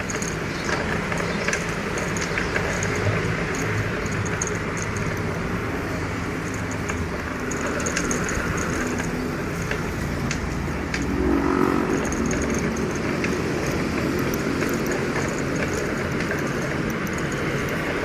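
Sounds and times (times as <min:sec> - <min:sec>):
road and wind rumble: 0:00.0 - 0:18.0.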